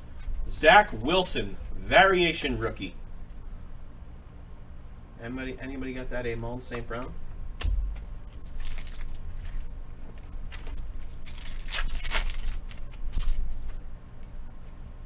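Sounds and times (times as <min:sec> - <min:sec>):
foil wrappers tearing and crinkling: 0:08.0 - 0:13.8.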